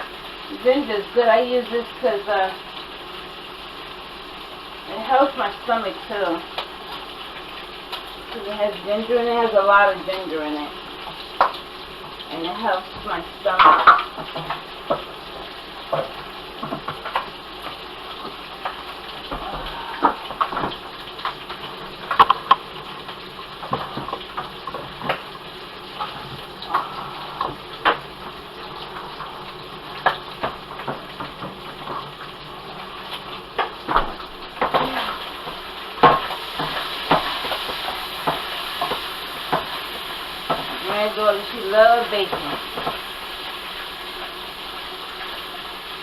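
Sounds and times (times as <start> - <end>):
food sizzling in a pot: 0.0 - 46.0.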